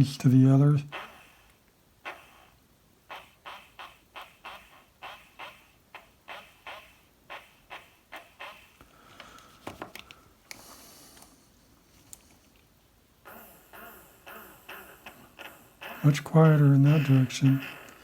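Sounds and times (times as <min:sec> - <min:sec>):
small motor ticking: 0:13.3 - 0:18.0.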